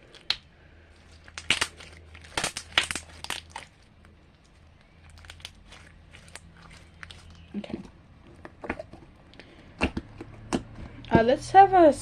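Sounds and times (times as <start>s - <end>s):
packaging crinkling: 0.0s - 9.2s.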